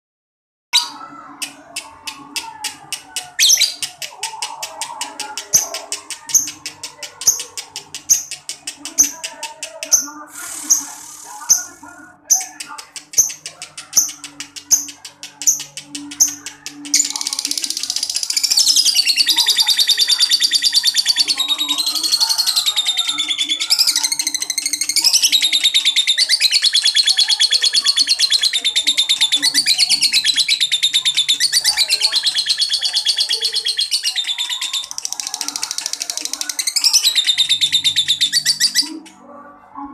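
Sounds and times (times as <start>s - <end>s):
lovebird chirping and twittering: 9.8s - 39.2s.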